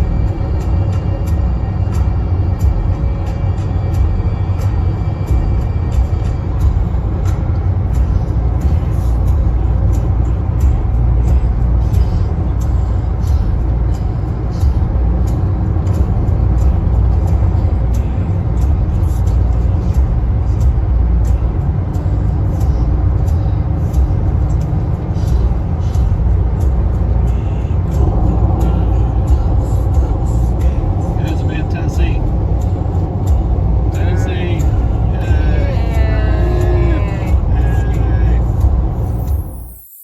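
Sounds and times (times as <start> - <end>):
vehicle rumbling: 0.0 - 40.0.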